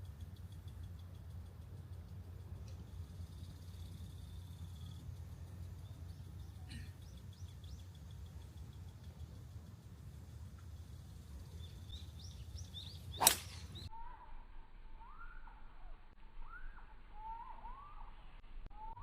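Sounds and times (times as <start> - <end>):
small birds chirping: 0.0 - 14.0
golf club hitting ball: 13.1 - 13.9.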